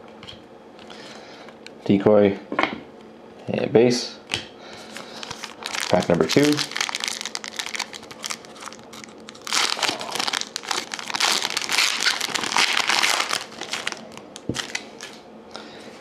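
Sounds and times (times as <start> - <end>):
wrapper tearing and crinkling: 5.0 - 15.2.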